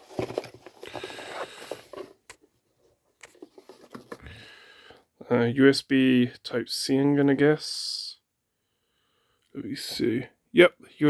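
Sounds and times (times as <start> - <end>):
packaging rustling and clicking: 0.0 - 2.5, 3.2 - 4.3.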